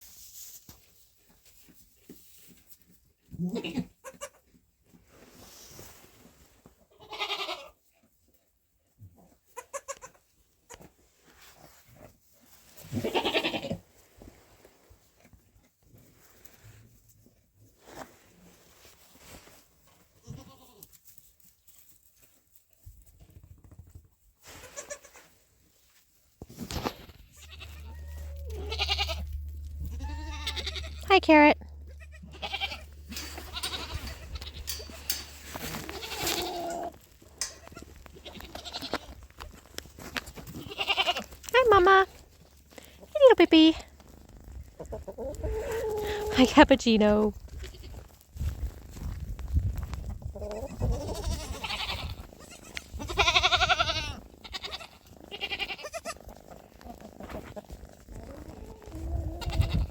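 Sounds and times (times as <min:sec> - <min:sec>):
goats bleating: 0:06.9 - 0:07.8, 0:12.9 - 0:13.8, 0:20.2 - 0:20.8, 0:24.6 - 0:25.2, 0:27.3 - 0:35.1, 0:35.9 - 0:39.1, 0:40.6 - 0:41.3, 0:50.5 - 0:56.4, 0:59.2 - 0:59.9.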